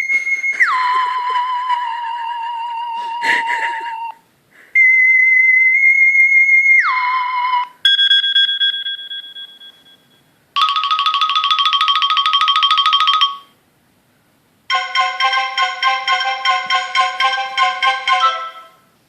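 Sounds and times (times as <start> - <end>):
phone ringtones: 6.9 - 13.6, 14.7 - 18.8.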